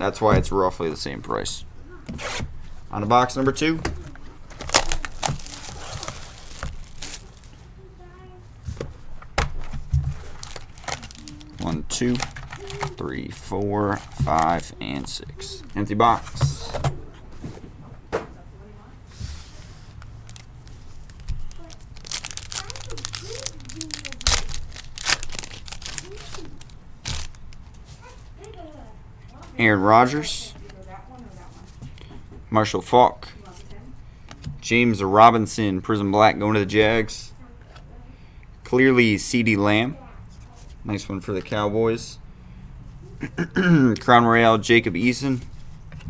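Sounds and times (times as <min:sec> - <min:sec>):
cardboard handling: 0:01.9 - 0:07.7, 0:08.6 - 0:17.6, 0:19.1 - 0:28.3
plastic wrap crinkling: 0:03.4 - 0:07.6, 0:09.6 - 0:14.7, 0:19.4 - 0:28.3.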